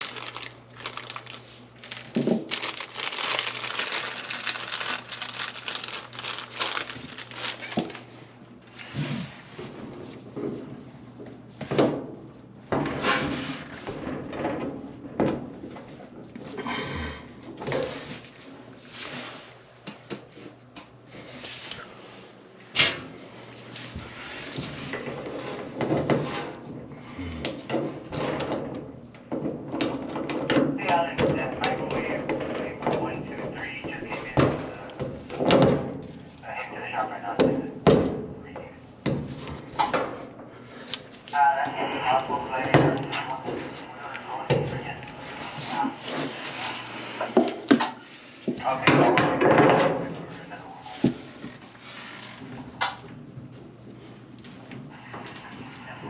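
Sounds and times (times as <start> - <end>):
crinkling and rustling: 0.0 - 11.8, 39.2 - 56.0
objects scraping and clunking: 12.7 - 19.6, 20.3 - 27.0, 39.1 - 56.0.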